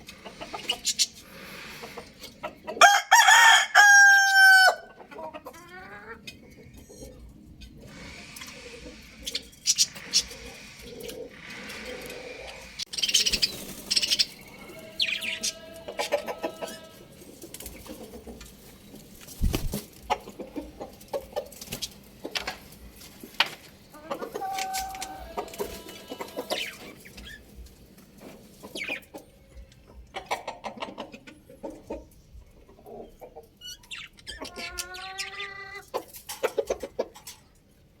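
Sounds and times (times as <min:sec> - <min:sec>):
chickens clucking: 0:00.0 - 0:37.9
young roosters crowing: 0:02.8 - 0:05.0, 0:14.4 - 0:17.2, 0:24.0 - 0:26.9.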